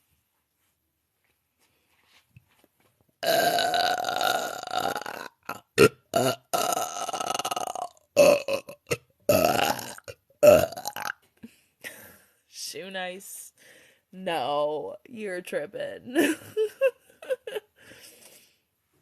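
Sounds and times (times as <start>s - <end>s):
woman belching: 3.2s - 11.2s.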